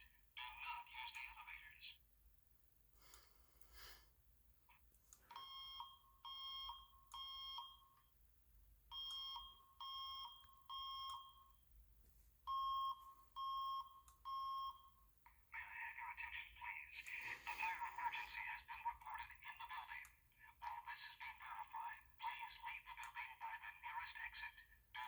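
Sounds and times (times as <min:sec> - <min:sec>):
fire alarm beeps: 0:05.3 - 0:08.1, 0:08.9 - 0:11.6, 0:12.5 - 0:15.1.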